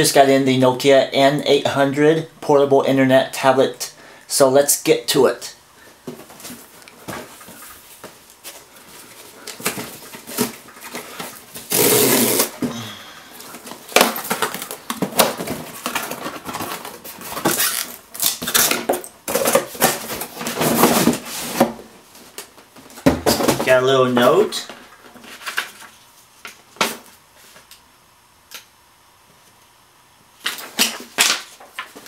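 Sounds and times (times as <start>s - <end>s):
cardboard packaging rustling: 6.0s - 12.7s, 13.4s - 23.7s.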